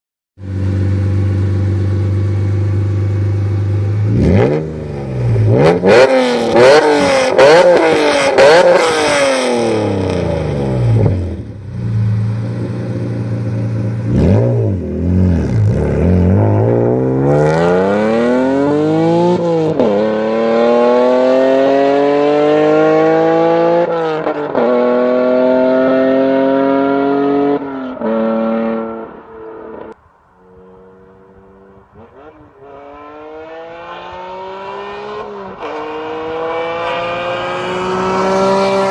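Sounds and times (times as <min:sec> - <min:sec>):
car engine idling: 0:00.4 - 0:04.1, 0:11.5 - 0:14.1
car engine revving: 0:00.4 - 0:38.9.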